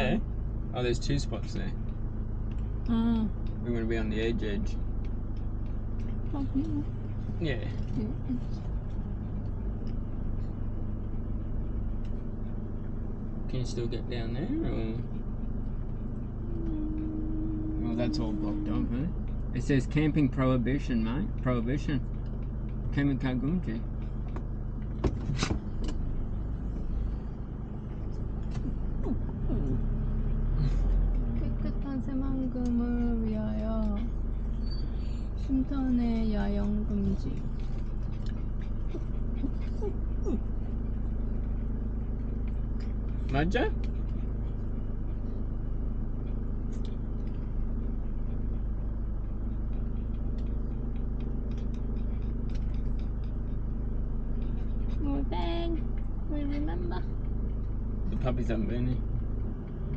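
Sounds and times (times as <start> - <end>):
van engine running: 0.0 - 59.9.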